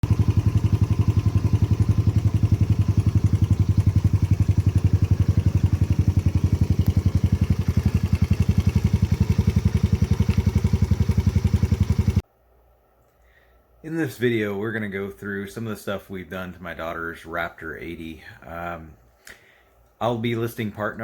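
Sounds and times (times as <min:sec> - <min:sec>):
small engine idling: 0:00.0 - 0:12.2.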